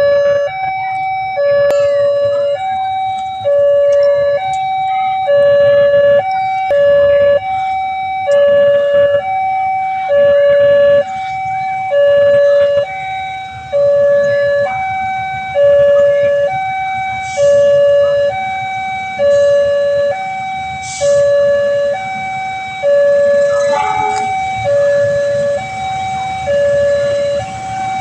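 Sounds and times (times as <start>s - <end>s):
two-tone level crossing siren: 0.0s - 28.0s.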